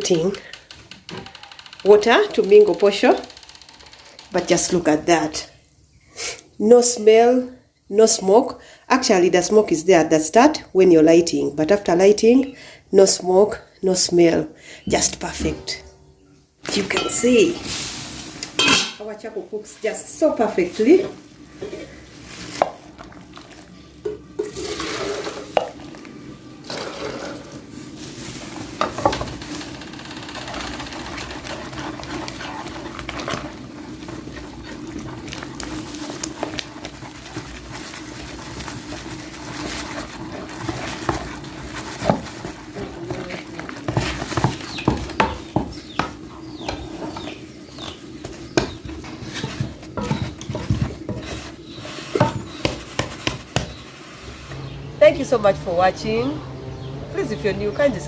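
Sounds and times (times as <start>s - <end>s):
utensil scraping a pot: 20.7s - 26.0s, 26.6s - 54.7s.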